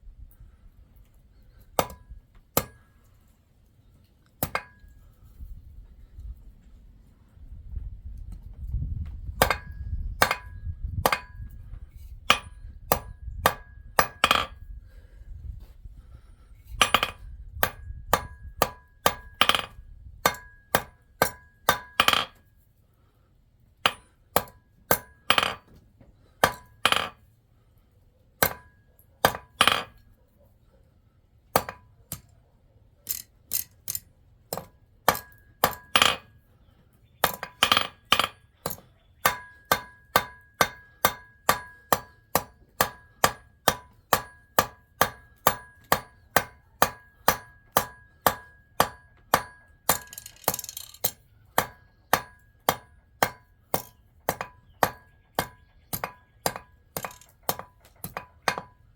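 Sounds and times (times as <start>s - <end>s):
hammer striking metal on anvil: 1.8s - 2.0s, 2.6s - 2.8s, 4.4s - 4.8s, 9.4s - 11.5s, 12.3s - 14.6s, 16.8s - 22.4s, 23.8s - 25.6s, 26.4s - 27.1s, 28.4s - 29.9s, 31.6s - 31.8s, 33.1s - 36.2s, 37.2s - 58.8s.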